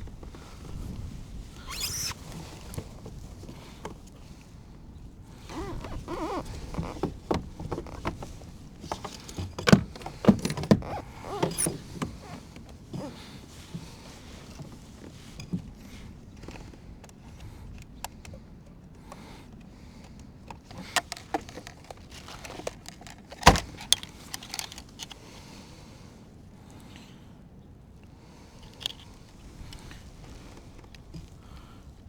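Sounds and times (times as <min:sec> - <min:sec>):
gear knocking and rustling: 0:00.0 - 0:04.0, 0:05.5 - 0:18.4, 0:19.0 - 0:25.2
zipper-like rasp: 0:01.6 - 0:02.2.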